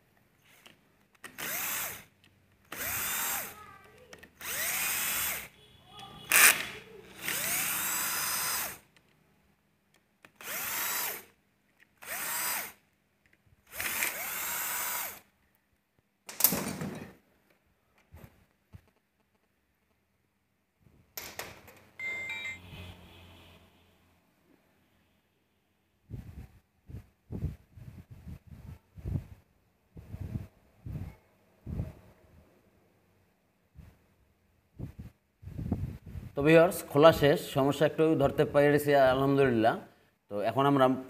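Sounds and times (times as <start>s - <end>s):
power drill whirring in bursts: 1.2s - 2.1s, 2.7s - 3.7s, 4.4s - 8.9s, 10.3s - 11.4s, 12.0s - 12.8s, 13.6s - 15.3s.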